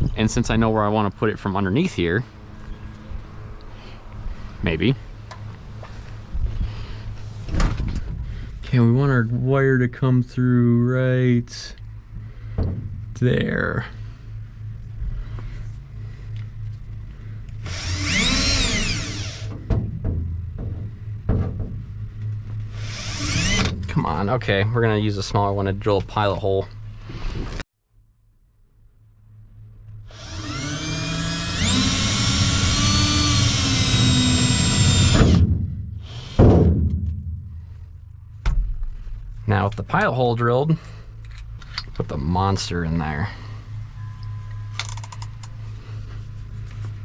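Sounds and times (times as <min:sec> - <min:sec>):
faint low hum: 0:00.0 - 0:47.0
power drill whine: 0:17.6 - 0:19.5, 0:22.6 - 0:23.8, 0:30.0 - 0:35.4.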